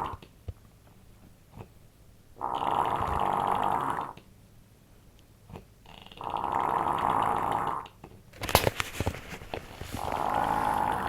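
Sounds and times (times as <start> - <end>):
woman snoring: 5.9 - 7.8, 10.0 - 11.0.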